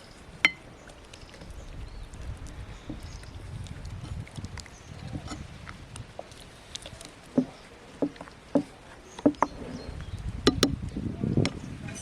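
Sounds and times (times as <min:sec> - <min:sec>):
sharp knocks and clinks: 0:10.5 - 0:10.8.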